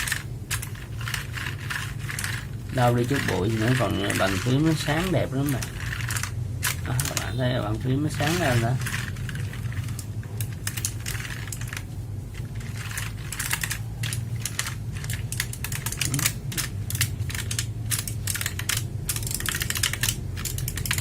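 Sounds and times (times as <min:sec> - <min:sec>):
steady low hum: 0:00.0 - 0:21.0
mechanical keyboard typing clicks: 0:12.7 - 0:21.0.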